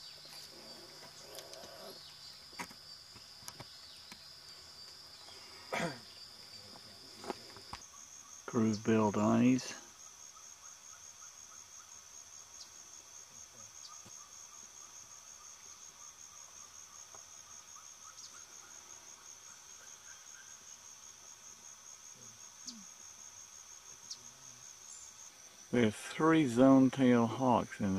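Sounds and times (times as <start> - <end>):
high-pitched insect trill: 0.0 - 27.9
faint bird chirps: 13.6 - 20.7, 22.6 - 23.0, 24.0 - 25.2.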